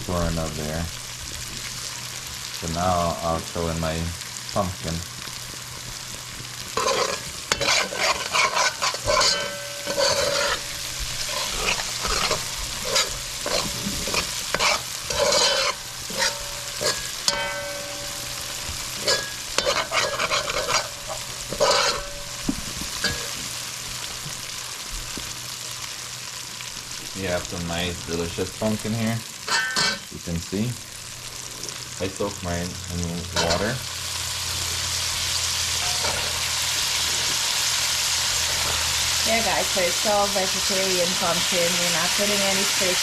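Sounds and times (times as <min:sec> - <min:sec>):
food sizzling in hot oil: 0:00.0 - 0:43.0
spoon scraping and clanking pot: 0:06.8 - 0:23.4, 0:29.5 - 0:30.1, 0:33.4 - 0:33.8, 0:35.8 - 0:36.5.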